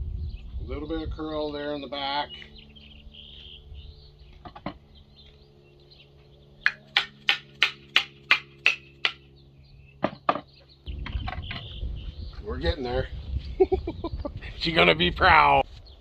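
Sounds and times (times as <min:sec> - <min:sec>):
birds chirping faintly: 0:00.1 - 0:16.0
axe knocks: 0:10.0 - 0:10.5.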